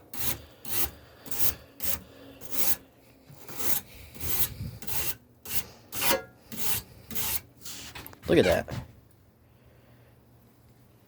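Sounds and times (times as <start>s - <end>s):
wire brush scraping metal fins: 0.0s - 2.8s, 3.4s - 8.6s.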